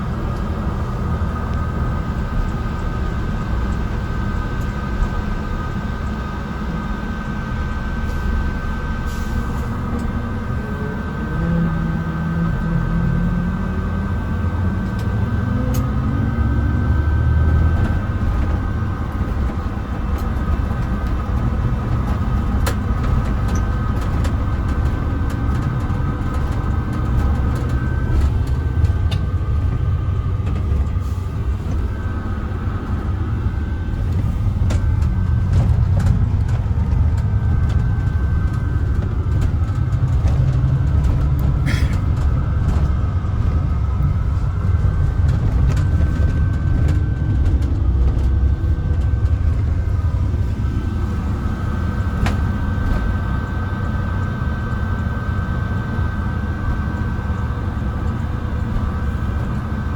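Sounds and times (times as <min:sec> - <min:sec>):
bus engine and road rumble: 0:00.0 - 0:59.9
rattles and clicks: 0:17.5 - 0:53.5.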